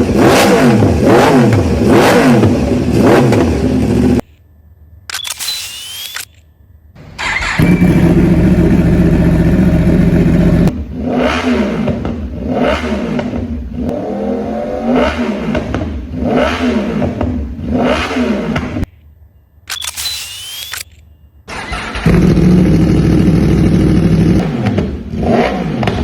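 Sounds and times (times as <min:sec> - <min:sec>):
motorcycle engine revving: 0:00.0 - 0:04.2, 0:07.2 - 0:18.9, 0:21.5 - 0:26.0.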